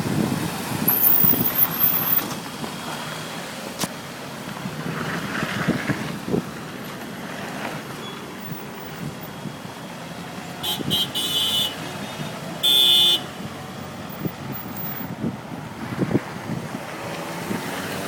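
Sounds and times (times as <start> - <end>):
street traffic noise: 0.0 - 18.0
car horn toots and blast: 10.6 - 13.5.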